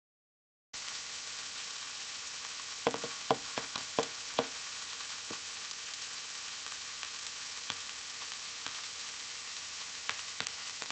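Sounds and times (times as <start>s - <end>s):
butter sizzling with pops: 0.8s - 10.9s.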